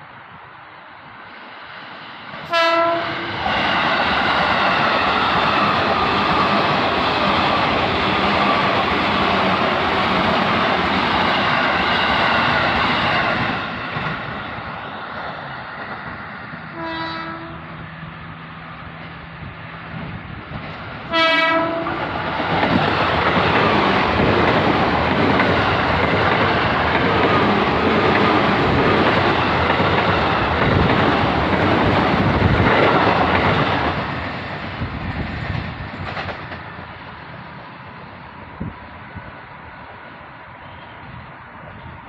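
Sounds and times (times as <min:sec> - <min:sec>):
train passing: 0:00.0 - 0:42.0
train horn blast: 0:02.5 - 0:03.4, 0:16.7 - 0:17.8, 0:21.1 - 0:22.0.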